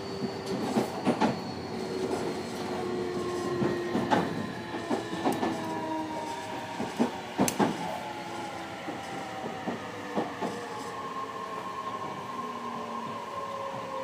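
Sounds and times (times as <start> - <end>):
rumble of train wheels: 0.0 - 14.0
wheels clacking over rail joints: 3.1 - 7.9.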